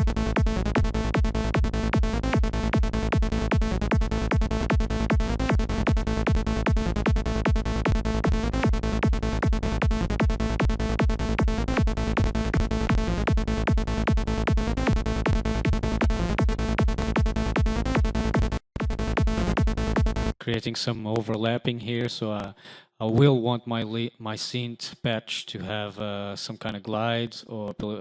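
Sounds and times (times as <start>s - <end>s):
fast kick and bass pulse: 0.0s - 20.4s.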